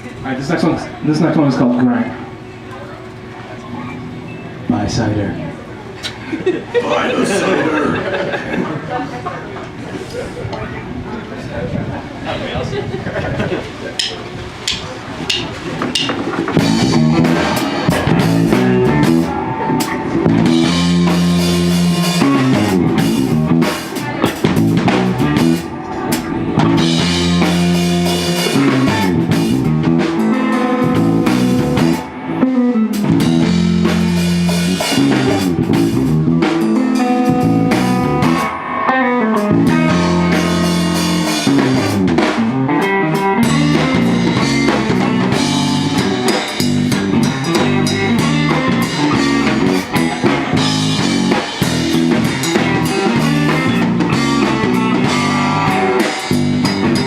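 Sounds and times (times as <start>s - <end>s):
bass riff: 14.0s - 57.0s
rock band playing: 14.0s - 57.0s.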